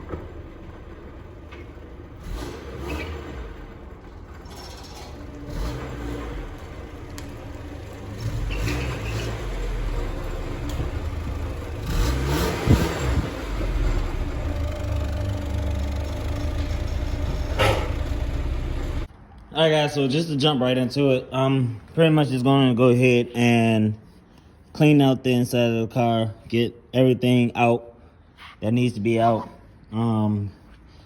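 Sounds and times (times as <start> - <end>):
car engine running at low speed: 0.0 - 19.1.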